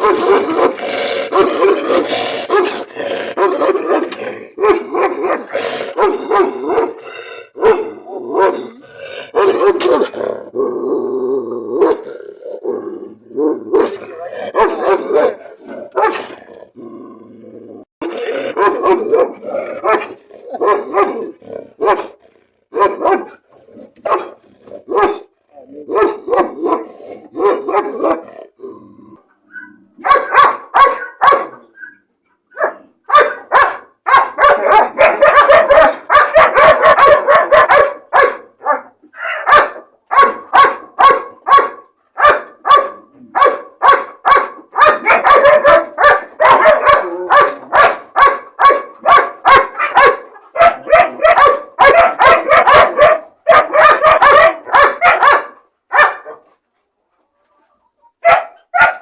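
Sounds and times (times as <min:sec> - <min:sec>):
dog barking: 0:00.0 - 0:07.0, 0:07.6 - 0:10.2, 0:11.8 - 0:12.0, 0:13.7 - 0:16.3, 0:18.5 - 0:23.4, 0:24.0 - 0:25.3, 0:25.9 - 0:28.3, 0:30.0 - 0:31.7, 0:32.5 - 0:56.6, 0:58.2 - 0:59.0.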